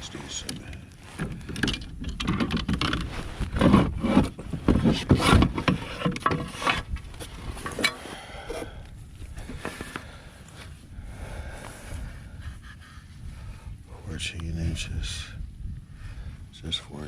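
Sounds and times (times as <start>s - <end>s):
rubbing and knocking against kayak: 0.0s - 8.8s, 9.4s - 10.2s.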